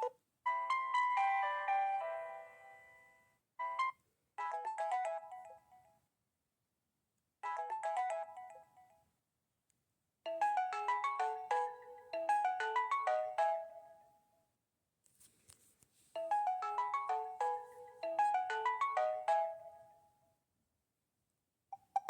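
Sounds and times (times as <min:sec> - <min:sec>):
phone ringtone melody: 0:00.0 - 0:05.7, 0:07.4 - 0:08.8, 0:10.3 - 0:14.2, 0:16.2 - 0:20.1.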